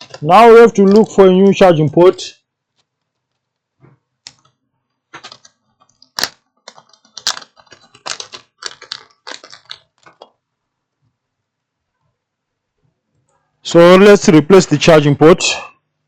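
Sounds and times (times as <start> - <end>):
small plastic parts rattling: 0.0 - 1.2, 5.1 - 10.4.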